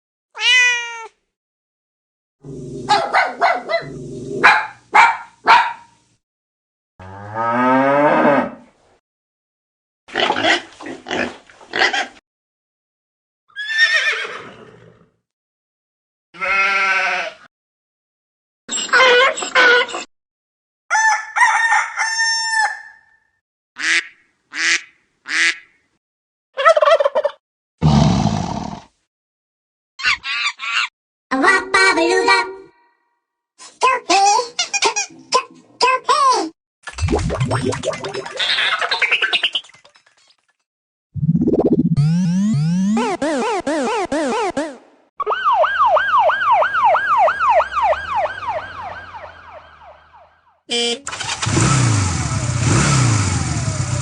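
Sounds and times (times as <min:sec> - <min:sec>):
low growl: 0:02.4 - 0:03.0
cartoon dog barking: 0:02.8 - 0:05.9, 0:42.5 - 0:44.8
cartoon dog yelp: 0:02.9 - 0:05.8, 0:26.6 - 0:27.4, 0:42.5 - 0:45.4
cartoon rooster crowing: 0:20.9 - 0:23.2.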